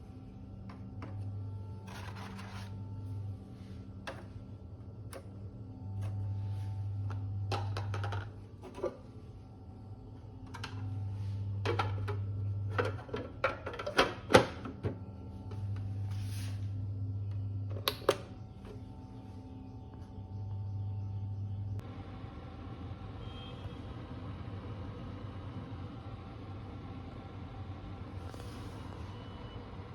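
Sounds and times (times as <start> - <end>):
low hum: 14.6 - 29.9.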